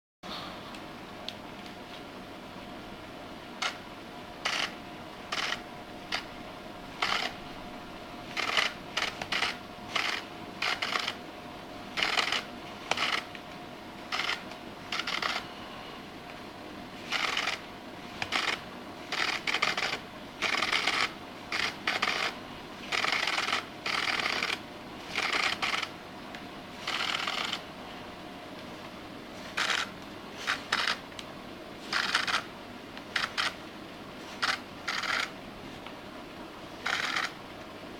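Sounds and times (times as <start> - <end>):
flash zoom motor whirring: 17.0 - 17.6, 18.2 - 25.9, 29.4 - 31.0, 36.8 - 37.4.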